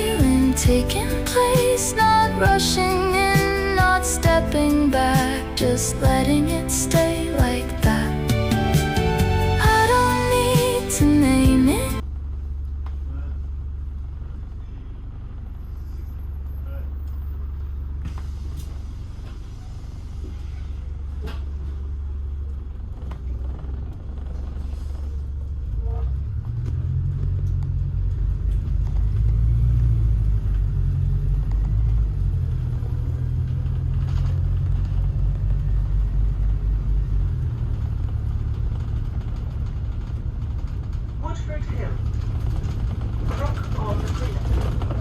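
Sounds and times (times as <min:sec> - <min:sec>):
road vehicle rumble: 0:00.0 - 0:45.0.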